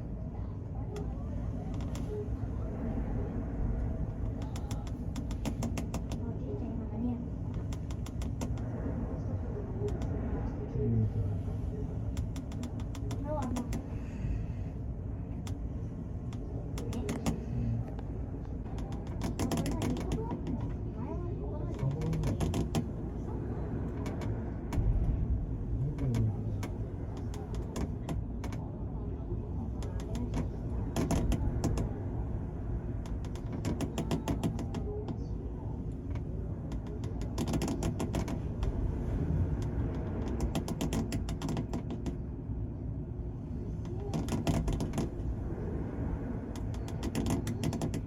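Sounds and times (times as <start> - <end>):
ship and sea rumble: 0.0 - 48.0
ticking and creaking fittings: 4.2 - 6.3, 7.4 - 8.7, 12.0 - 14.4, 15.3 - 20.8, 21.6 - 23.1, 25.8 - 28.7, 33.0 - 35.3, 35.9 - 38.8, 39.6 - 42.2, 43.8 - 45.2, 46.5 - 48.0.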